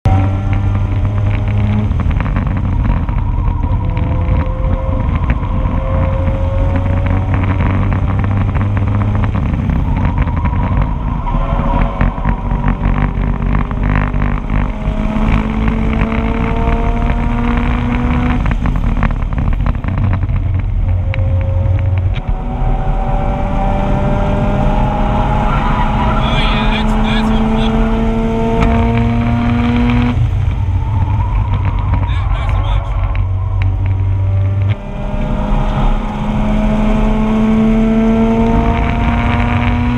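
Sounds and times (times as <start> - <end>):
rotary engine revving through gears: 0.1 - 19.7, 21.2 - 39.9.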